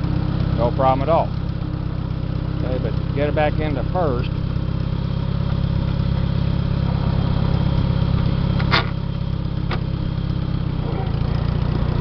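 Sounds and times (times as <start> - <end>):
tractor engine idling: 0.0 - 12.0.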